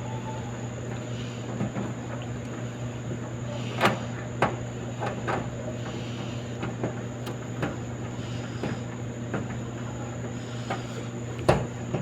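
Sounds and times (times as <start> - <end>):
clothes dryer humming: 0.0 - 12.0
knocks and clicks in dryer: 3.8 - 5.5, 6.6 - 8.0, 10.7 - 12.0.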